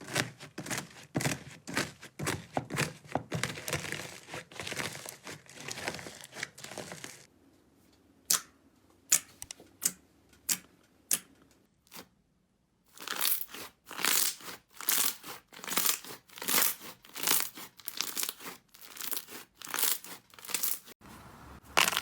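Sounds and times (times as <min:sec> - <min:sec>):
slime crackling: 0:13.0 - 0:20.9, 0:21.6 - 0:22.0.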